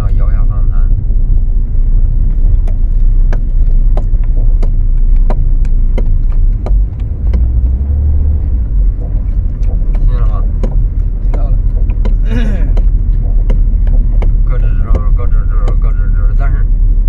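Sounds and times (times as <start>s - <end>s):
car road and engine rumble: 0.0s - 17.0s.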